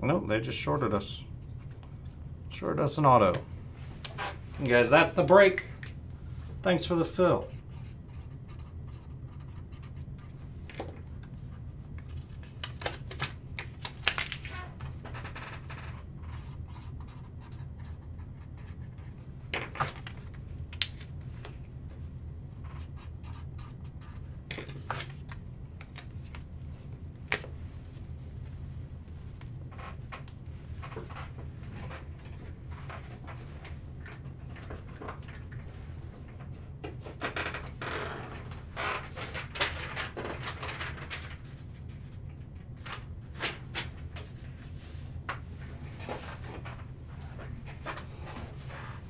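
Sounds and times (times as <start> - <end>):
steady low hum: 0.0 - 49.0
cards and packaging handled: 12.0 - 14.9.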